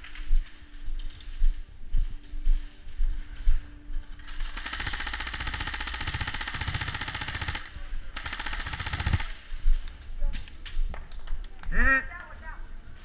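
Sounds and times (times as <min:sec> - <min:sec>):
airsoft gun firing bursts: 0:04.2 - 0:09.6.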